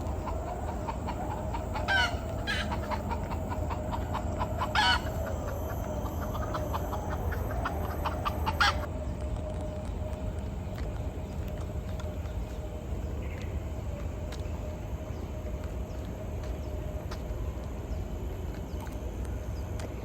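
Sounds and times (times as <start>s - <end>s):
sharp chicken calls: 0.0s - 8.9s
chickens clucking: 0.0s - 9.0s.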